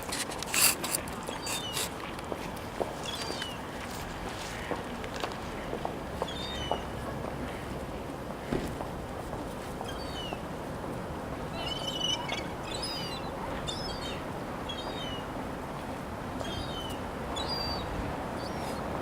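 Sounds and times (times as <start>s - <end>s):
outdoor background noise: 0.0s - 19.0s
birds calling: 0.9s - 2.0s, 2.9s - 7.8s, 11.5s - 15.3s, 16.4s - 19.0s.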